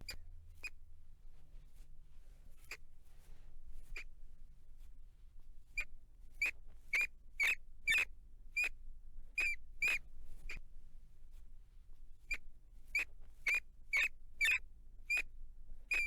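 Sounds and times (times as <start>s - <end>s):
rat squeaking: 5.8s - 8.7s, 9.4s - 10.0s, 12.3s - 15.2s.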